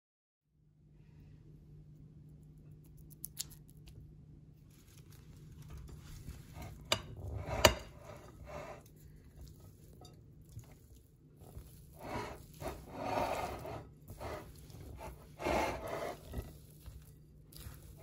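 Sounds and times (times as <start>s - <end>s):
low steady hum: 0.5s - 18.0s.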